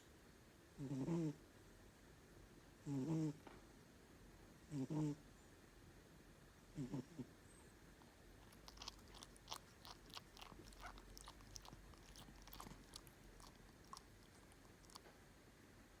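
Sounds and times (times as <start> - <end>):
cat mouth clicks and smacks: 8.4 - 15.1.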